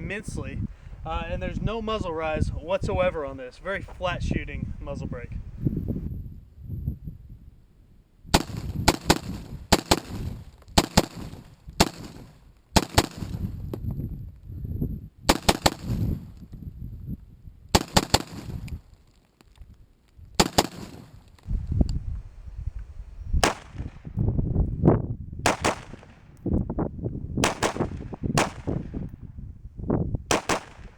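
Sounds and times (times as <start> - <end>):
rifle shots: 23.4 - 24.0, 25.5 - 26.2, 27.4 - 28.8, 30.3 - 30.9.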